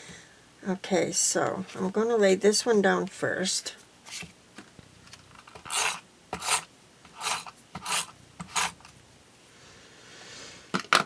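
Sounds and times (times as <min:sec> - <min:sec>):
rasping rubs on paper: 0:05.6 - 0:08.8.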